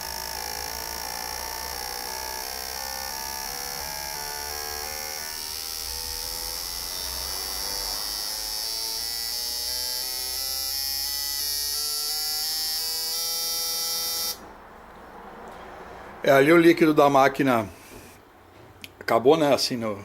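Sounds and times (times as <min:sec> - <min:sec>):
injector machine electric buzz: 0:00.0 - 0:14.5.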